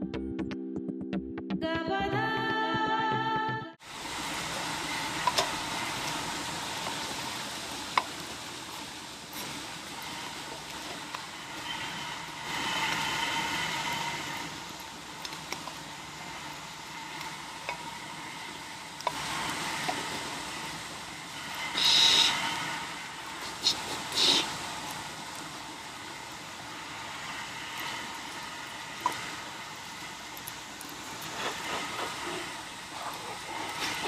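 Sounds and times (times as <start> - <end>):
fire hissing and crackling: 3.8 - 34.0.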